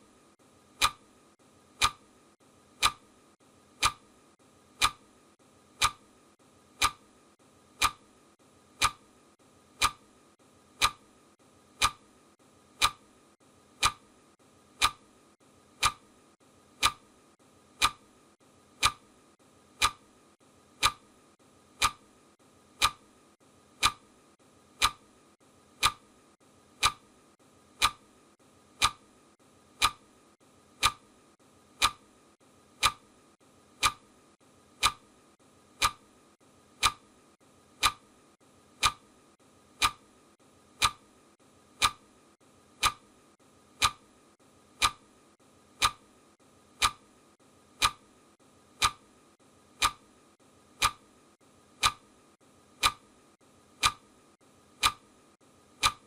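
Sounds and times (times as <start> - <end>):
clock ticking: 0.7 - 1.1, 1.7 - 2.1, 2.7 - 3.1, 3.8 - 4.1, 4.7 - 5.1, 5.7 - 6.1, 6.7 - 7.1, 7.7 - 8.1, 8.7 - 9.1, 9.7 - 10.1, 10.7 - 11.1, 11.7 - 12.1, 12.7 - 13.1, 13.7 - 15.1, 15.7 - 16.1, 16.7 - 17.1, 17.7 - 19.1, 19.7 - 20.1, 20.8 - 22.1, 22.7 - 23.1, 23.8 - 24.1, 24.7 - 26.1, 26.8 - 27.1, 27.7 - 28.2, 28.8 - 30.2, 30.8 - 31.1, 31.7 - 32.1, 32.8 - 33.1, 33.8 - 34.1, 34.8 - 36.1, 36.8 - 37.2, 37.8 - 38.2, 38.8 - 39.1, 39.7 - 42.2, 42.8 - 44.1, 44.8 - 45.1, 45.8 - 46.1, 46.8 - 47.1, 47.8 - 48.1, 48.8 - 49.1, 49.7 - 50.1, 50.8 - 51.1, 51.8 - 52.1, 52.8 - 53.1, 53.8 - 54.1, 54.8 - 55.1, 55.8 - 56.0.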